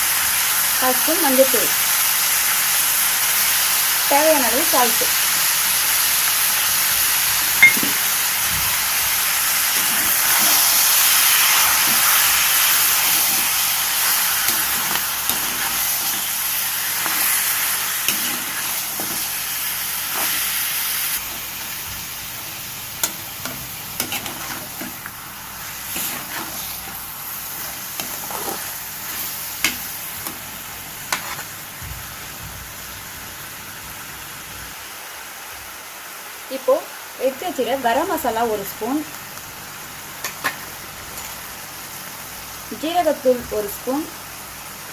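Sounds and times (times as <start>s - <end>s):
chicken sizzling in a frying pan: 0.0s - 44.9s
spatula scraping a pan: 11.7s - 19.4s, 20.0s - 20.6s, 23.0s - 25.1s, 25.7s - 30.5s, 31.1s - 31.5s.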